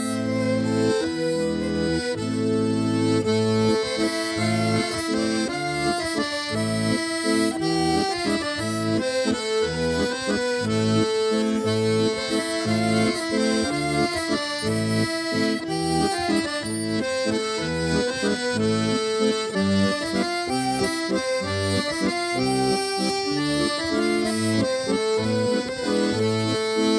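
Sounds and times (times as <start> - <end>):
instrumental folk tune: 0.0 - 26.9
pulsing bass chords: 0.0 - 26.9.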